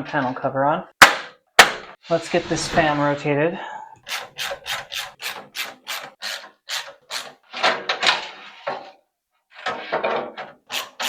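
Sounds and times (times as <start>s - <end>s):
screwdriver clicking and rasping: 4.1s - 7.4s, 10.7s - 11.0s.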